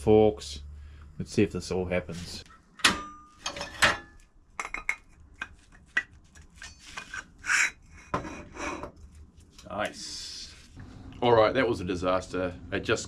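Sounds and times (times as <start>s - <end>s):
metal parts knocking and clinking: 2.8s - 5.0s
metal scraping: 6.6s - 9.0s.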